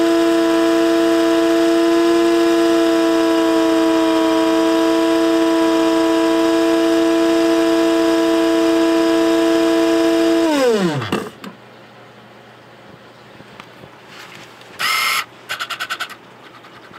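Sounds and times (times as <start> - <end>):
coffee grinder motor whining: 0.0 - 11.4, 14.8 - 16.2.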